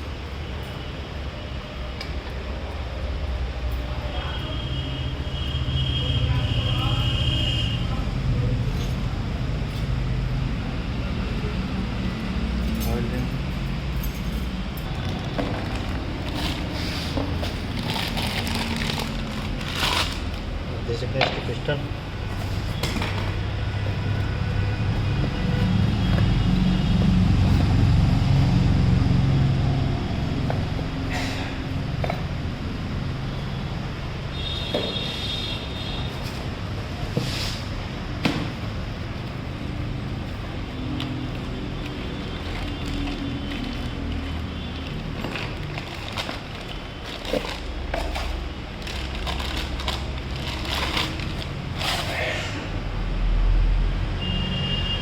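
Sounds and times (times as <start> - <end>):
vehicle engine humming: 0.0 - 54.0
engine parts scraping and clicking: 14.1 - 20.5, 40.9 - 52.4.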